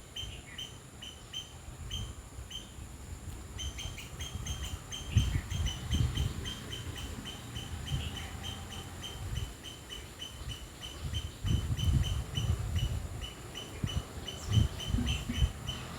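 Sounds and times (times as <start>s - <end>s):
insect chirping: 0.0s - 15.9s.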